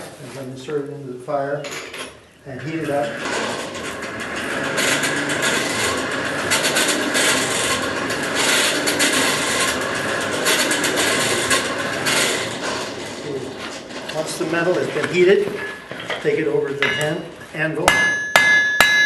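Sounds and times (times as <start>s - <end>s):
hand-cranked blower whirring: 2.6s - 14.3s.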